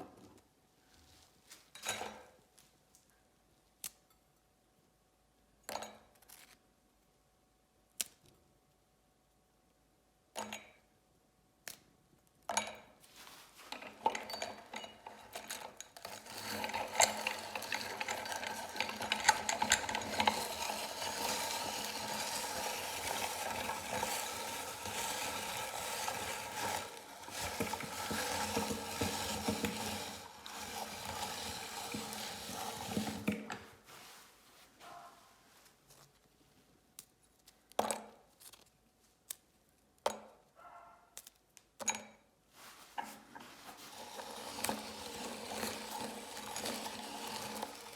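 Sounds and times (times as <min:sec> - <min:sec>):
meat grinder crushing cookies: 0:13.8 - 0:33.5, 0:43.7 - 0:47.9.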